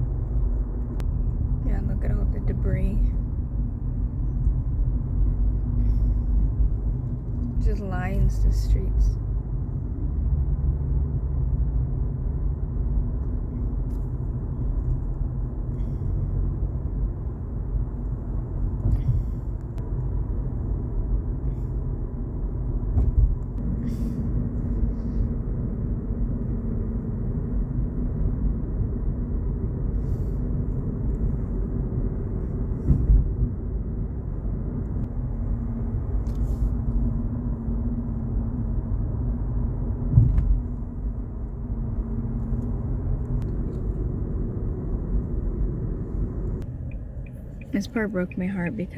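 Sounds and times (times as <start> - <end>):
tyre and engine rumble: 0.0 - 48.9.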